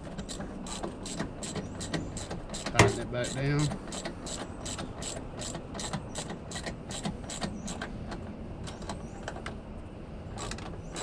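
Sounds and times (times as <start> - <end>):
ratchet wrench clicking: 0.3 - 7.9.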